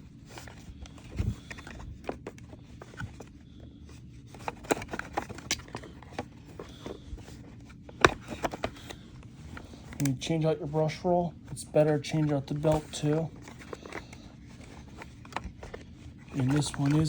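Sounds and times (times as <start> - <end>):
plastic parts clicking and knocking: 4.4 - 10.1.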